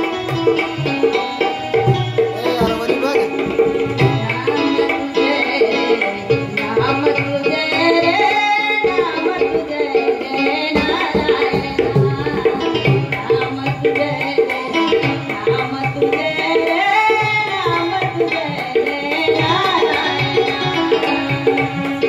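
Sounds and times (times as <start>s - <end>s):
tabla rhythm: 0.0s - 22.0s
person singing: 2.2s - 22.0s.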